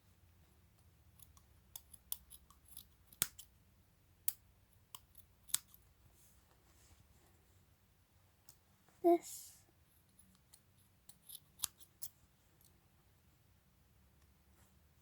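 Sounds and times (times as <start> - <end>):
scissors snipping cloth: 1.2 - 3.5, 4.3 - 5.8, 10.3 - 12.2.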